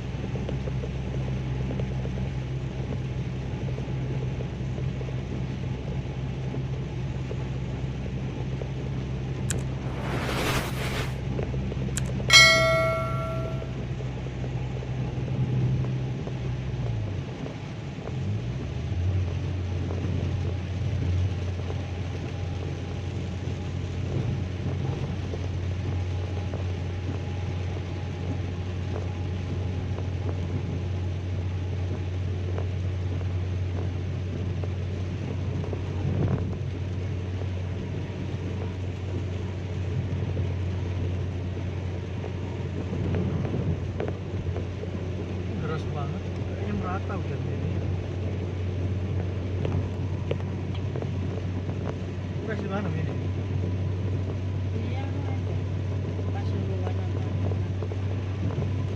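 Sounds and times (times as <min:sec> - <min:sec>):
engine and road drone: 0:00.0 - 0:12.2, 0:14.3 - 0:58.9
rain and tyre spray hiss: 0:08.5 - 0:11.4.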